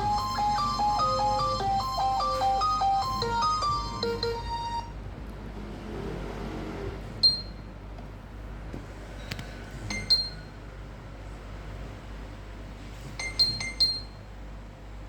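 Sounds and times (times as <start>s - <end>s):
phone ringtone: 0.0s - 5.0s.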